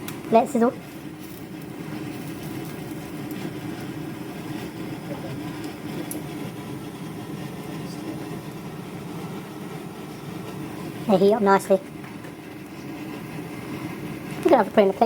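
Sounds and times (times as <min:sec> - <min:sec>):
oil crackling in a pan: 0:00.0 - 0:07.8
low kitchen hum: 0:00.0 - 0:15.0.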